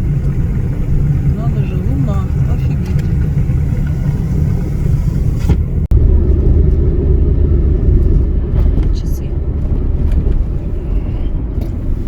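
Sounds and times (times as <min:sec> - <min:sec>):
car cabin rumble: 0:00.0 - 0:12.0.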